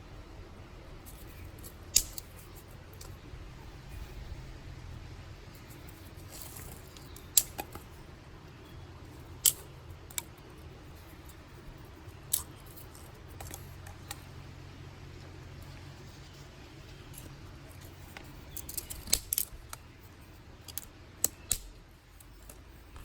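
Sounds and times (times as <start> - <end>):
dry sticks snapping: 1.1 - 3.2, 5.5 - 8.0, 9.1 - 14.3, 16.9 - 23.0.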